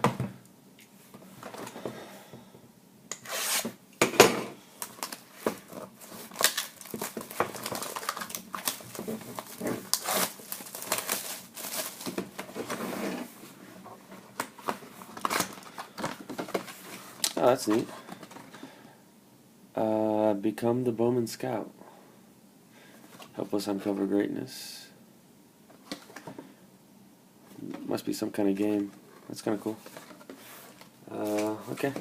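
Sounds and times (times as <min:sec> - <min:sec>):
wrapping tearing: 0:04.8 - 0:12.1.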